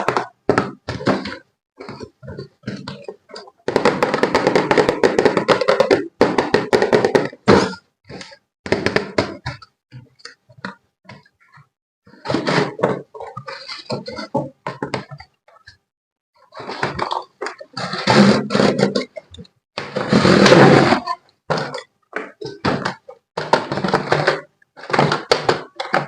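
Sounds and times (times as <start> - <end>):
objects clattering together: 16.5 - 26.0.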